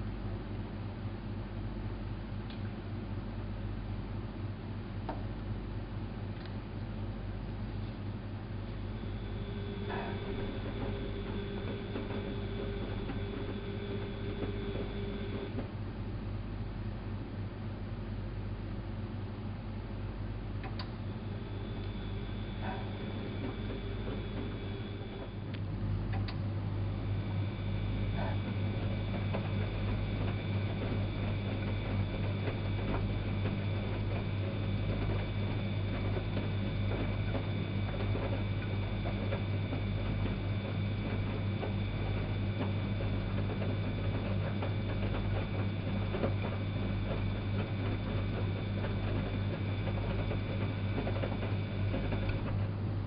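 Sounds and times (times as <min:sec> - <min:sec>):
washing machine motor hum: 0:00.0 - 0:53.0
high whine: 0:07.8 - 0:15.7, 0:20.6 - 0:52.6.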